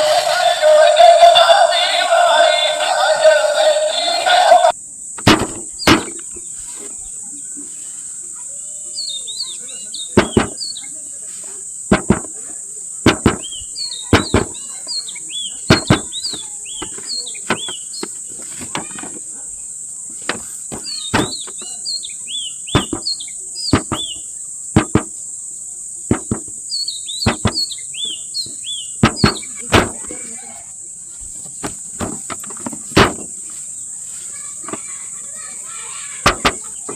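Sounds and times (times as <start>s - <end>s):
bird chirps: 7.5s - 11.0s, 13.2s - 18.4s, 20.7s - 25.0s, 26.1s - 30.4s.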